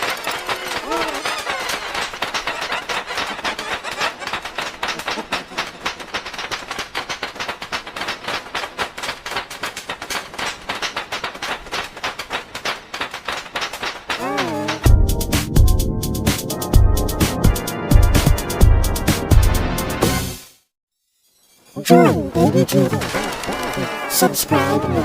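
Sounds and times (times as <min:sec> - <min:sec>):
rapid clicking and tapping: 0:00.0 - 0:16.6, 0:22.8 - 0:23.9.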